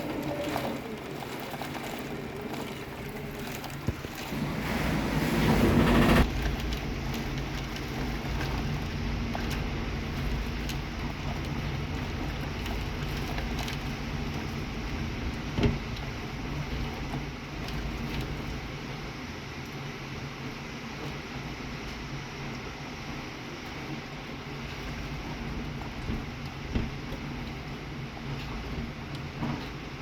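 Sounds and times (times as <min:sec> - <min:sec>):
low hum: 0:00.0 - 0:18.5
storm wind rushing: 0:04.2 - 0:07.1.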